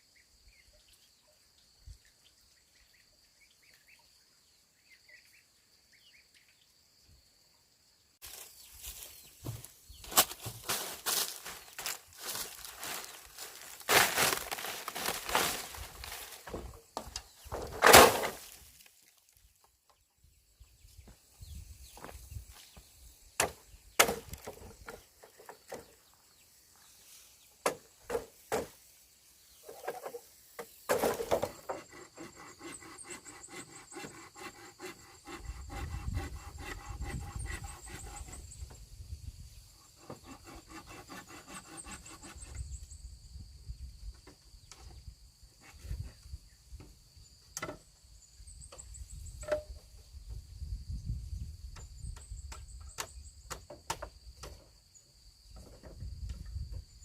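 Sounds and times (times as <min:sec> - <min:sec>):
insects trilling: 0:00.0 - 0:57.0
scraping strokes on wood: 0:29.6 - 0:38.6, 0:39.8 - 0:42.6.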